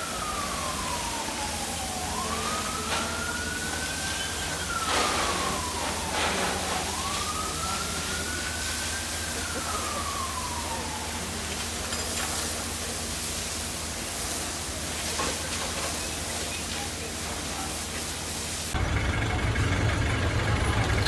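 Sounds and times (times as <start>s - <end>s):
engine idling: 18.7s - 21.0s.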